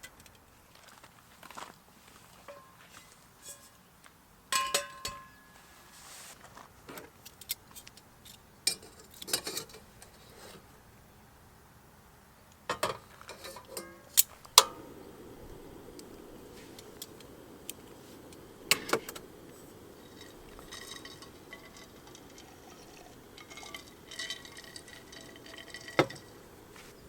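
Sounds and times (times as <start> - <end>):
dishes and utensils clinking: 2.5 - 3.8, 4.5 - 5.6, 20.0 - 27.0.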